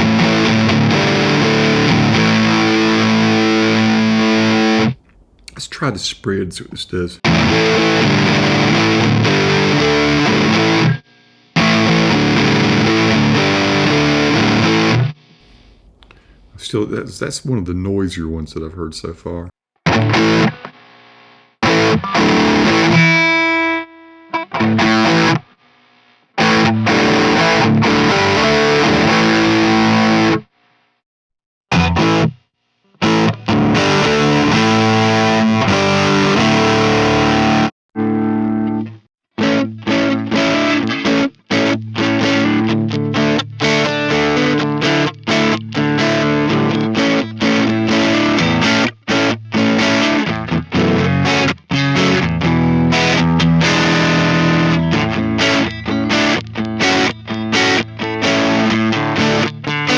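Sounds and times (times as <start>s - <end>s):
distorted electric guitar chords: 0.0s - 5.6s, 7.3s - 11.0s, 11.6s - 16.4s, 21.6s - 23.9s, 26.4s - 30.4s, 33.0s - 38.7s, 39.4s - 59.9s.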